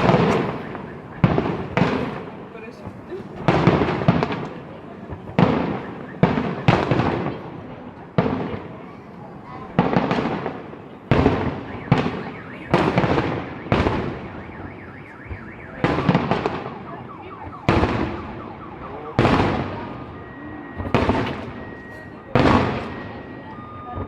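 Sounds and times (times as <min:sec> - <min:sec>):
fireworks bursting with rumble: 0:00.0 - 0:24.0.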